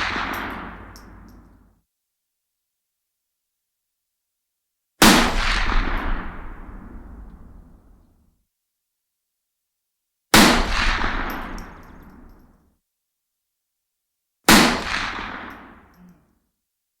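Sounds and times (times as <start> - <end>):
rifle shots with echo: 0.0 - 1.3, 5.0 - 7.9, 10.4 - 12.3, 14.5 - 15.9.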